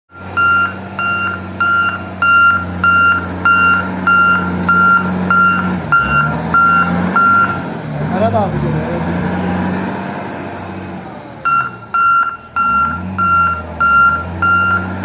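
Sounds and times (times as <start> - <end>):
reversing alarm beeping: 0.1 - 7.7, 11.4 - 15.0
diesel engine droning: 0.1 - 15.0.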